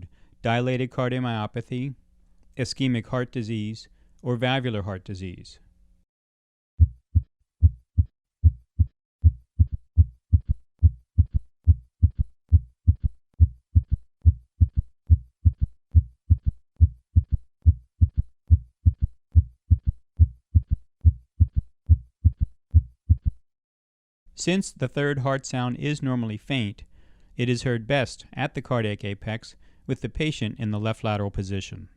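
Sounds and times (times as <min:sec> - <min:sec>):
heartbeat thumps: 0:06.8 - 0:23.4.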